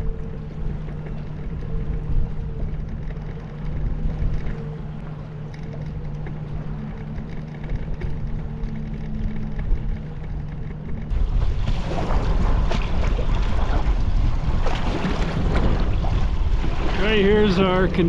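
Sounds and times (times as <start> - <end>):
boat motor humming: 0.0 - 18.0.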